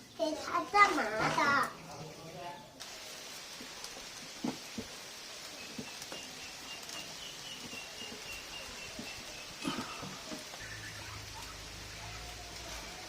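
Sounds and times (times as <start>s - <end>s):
light rain hissing: 0.0s - 13.0s
faint high-pitched chirping: 5.5s - 12.4s.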